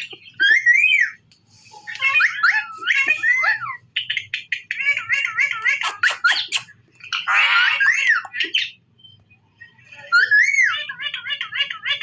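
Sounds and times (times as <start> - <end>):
parakeet squawk: 2.0 - 8.8
parakeet chattering chirps: 2.0 - 9.1.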